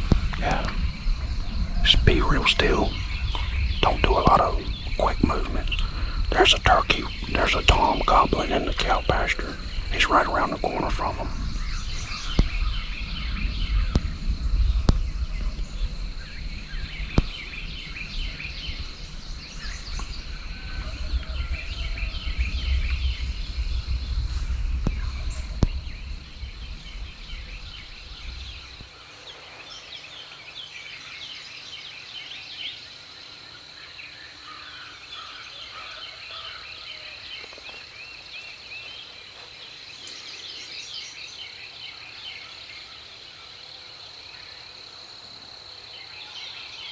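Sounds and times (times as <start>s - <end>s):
low rumble: 0.0s - 28.9s
birds calling: 0.0s - 46.9s.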